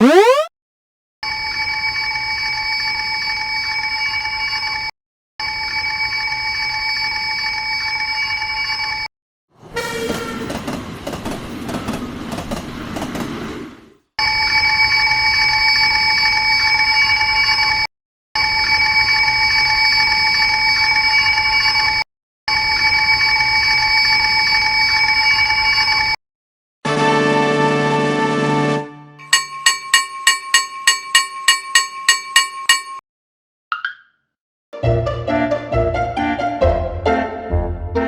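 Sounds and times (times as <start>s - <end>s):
level crossing warning bell: 29.2s - 33.0s.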